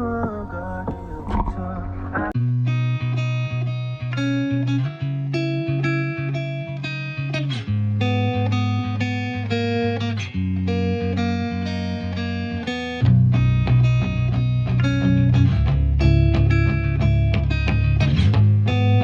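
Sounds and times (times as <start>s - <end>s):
bass notes: 0.0s - 4.6s, 10.4s - 19.0s
plucked guitar melody: 0.0s - 19.0s.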